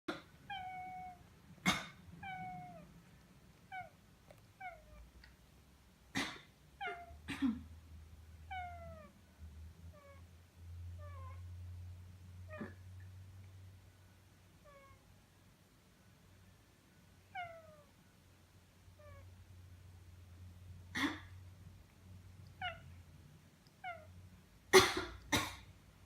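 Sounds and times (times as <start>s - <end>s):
cat meowing: 0.1s - 1.2s, 1.8s - 2.9s, 3.6s - 5.1s, 6.8s - 7.3s, 8.4s - 9.2s, 9.9s - 10.3s, 11.0s - 11.5s, 12.5s - 12.8s, 14.6s - 15.0s, 17.3s - 18.0s, 19.0s - 19.3s, 22.4s - 22.9s, 23.7s - 24.1s
person coughing sharply: 1.7s - 2.0s, 7.3s - 7.7s, 24.8s - 25.7s.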